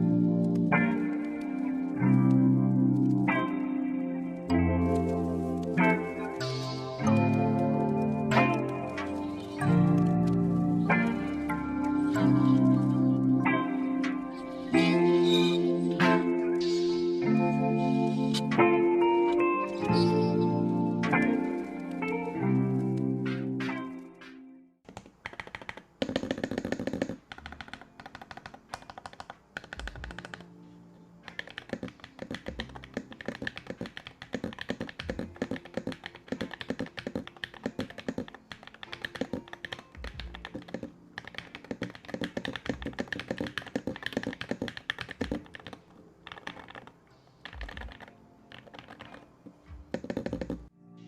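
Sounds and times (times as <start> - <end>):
mechanical keyboard typing: 24.9 - 30.5, 31.3 - 50.7.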